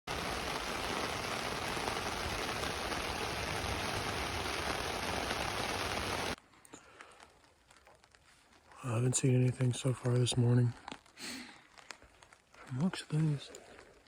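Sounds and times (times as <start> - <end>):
heavy rain hissing: 0.1 - 6.4.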